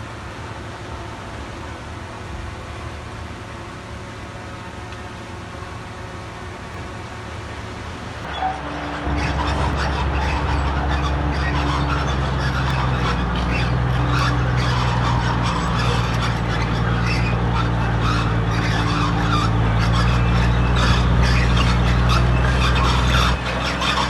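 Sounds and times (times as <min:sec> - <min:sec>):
diesel earthmoving machine engine: 0:00.0 - 0:24.0
scraping and grinding: 0:08.3 - 0:24.0.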